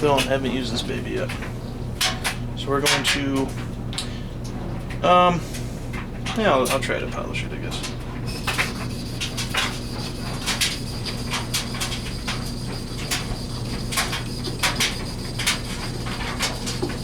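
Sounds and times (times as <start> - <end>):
steady low hum: 0.0 - 17.0
knife scraping on whetstone: 8.3 - 17.0.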